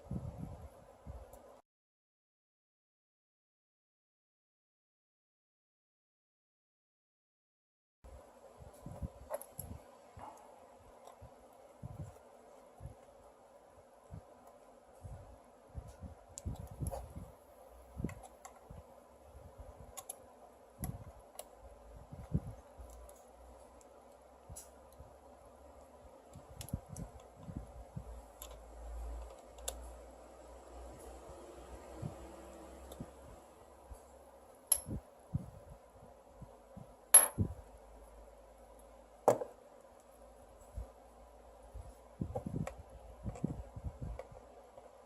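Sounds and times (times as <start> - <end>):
small parts clicking and tapping: 18.0 - 18.9, 19.8 - 30.0, 34.6 - 35.0.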